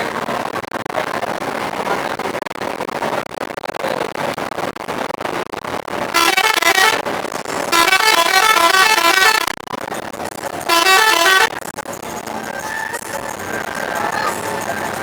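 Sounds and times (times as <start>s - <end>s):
road noise: 6.0s - 15.0s
bus horn playing stepping notes: 6.2s - 7.0s, 7.7s - 9.5s, 10.6s - 11.6s.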